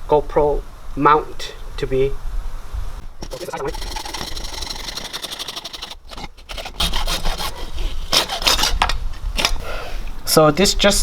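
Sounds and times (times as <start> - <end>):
saw cutting plastic pipe: 3.2 - 9.6.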